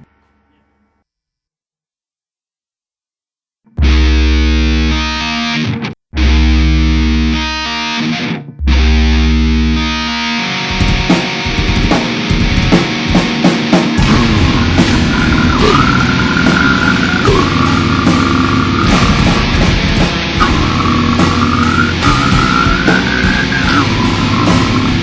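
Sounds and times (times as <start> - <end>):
distorted electric guitar chords: 3.7 - 25.0
death metal band playing fast: 6.2 - 25.0
sharp drum hits: 10.8 - 25.0.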